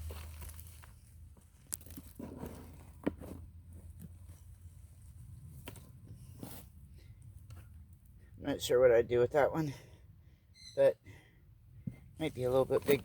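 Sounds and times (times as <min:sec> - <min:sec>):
soil clods crunching and tearing: 0:00.0 - 0:03.1.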